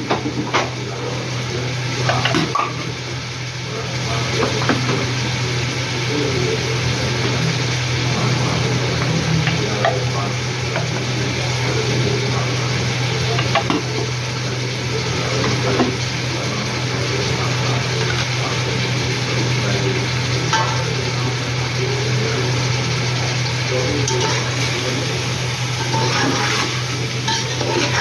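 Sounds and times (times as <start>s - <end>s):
food sizzling in a pot: 0.0s - 28.0s
spoon scraping metal pot: 24.0s - 24.8s, 25.8s - 28.0s.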